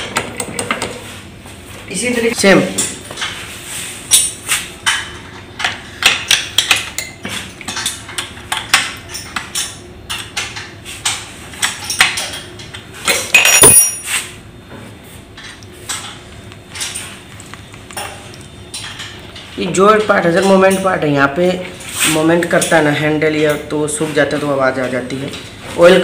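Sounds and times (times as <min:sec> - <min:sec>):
ringing metallic clink: 0:13.4 - 0:14.1.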